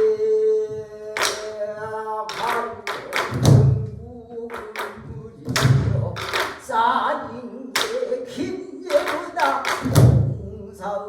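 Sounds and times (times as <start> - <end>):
deep drum thumps: 2.7 - 6.2, 9.8 - 10.4.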